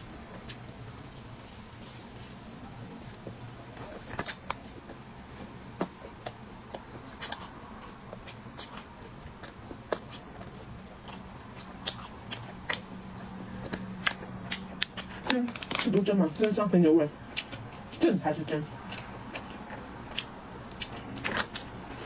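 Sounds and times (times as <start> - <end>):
faint steady hum: 0.0 - 22.0
person chewing food: 0.0 - 22.0.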